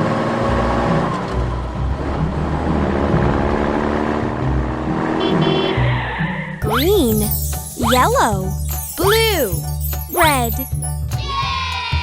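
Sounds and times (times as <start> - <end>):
background music: 6.6 - 11.4.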